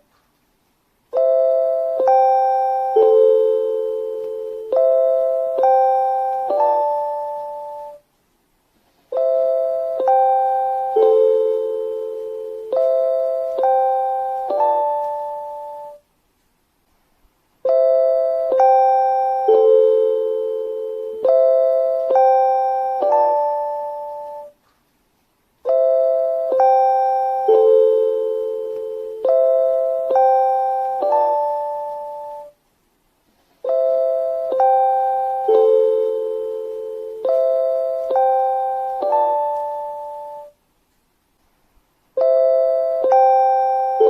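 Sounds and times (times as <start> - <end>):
electronic bell-like chime melody: 1.2 - 8.0, 17.7 - 24.5, 42.2 - 44.0.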